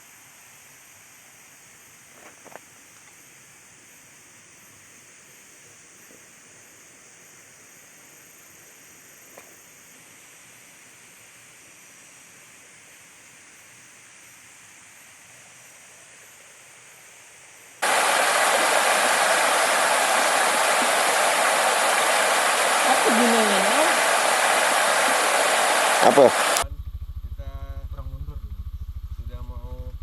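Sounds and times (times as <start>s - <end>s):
faint steady hiss: 0.0s - 26.6s
river rapids rushing: 17.8s - 26.6s
thin high steady tones: 17.8s - 26.6s.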